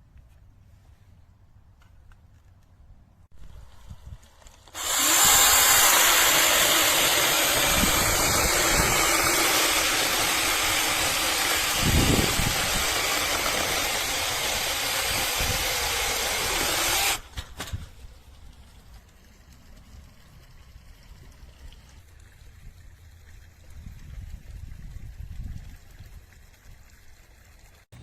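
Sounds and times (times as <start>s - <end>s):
chainsaw motor whining: 3.4s - 17.3s.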